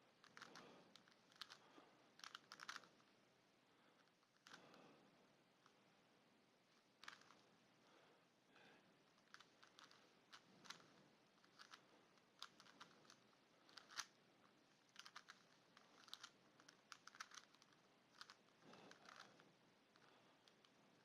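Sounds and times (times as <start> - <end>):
plastic puzzle cube clicks: 2.2 - 2.8, 12.4 - 14.1, 14.9 - 19.2.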